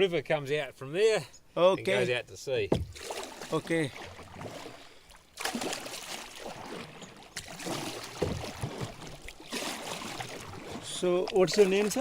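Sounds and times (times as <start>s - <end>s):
water splashing and trickling: 2.1s - 12.0s.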